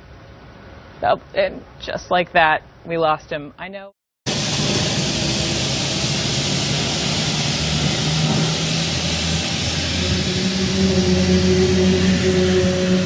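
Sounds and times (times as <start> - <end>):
loud rushing noise: 4.3 - 13.0
low droning hum: 4.3 - 13.0.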